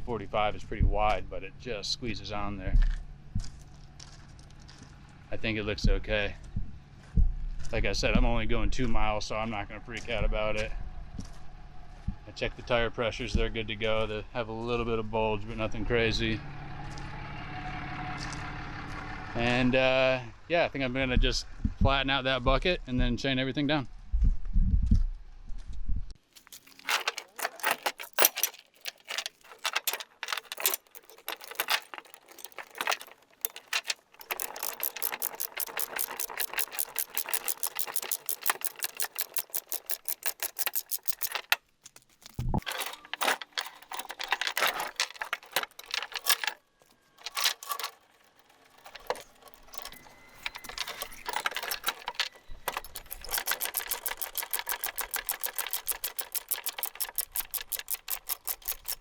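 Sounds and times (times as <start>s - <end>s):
chain links rattling and clanking: 26.3s - 59.0s
ratchet clicks: 26.5s - 46.6s, 47.2s - 59.0s.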